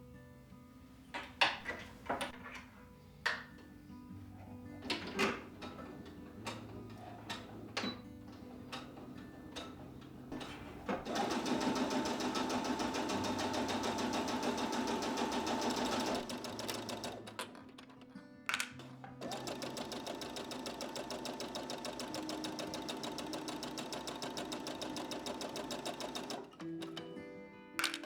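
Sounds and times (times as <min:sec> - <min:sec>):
sewing machine stitching: 0:04.7 - 0:17.8, 0:18.8 - 0:27.0.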